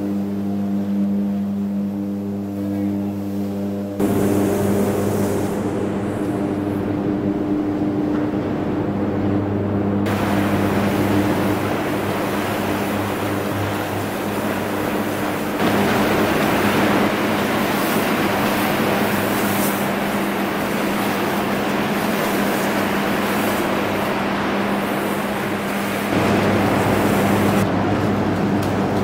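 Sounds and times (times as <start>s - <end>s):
low electrical hum: 0.0s - 29.0s
electric arcs crackling: 4.0s - 7.0s, 10.1s - 27.7s.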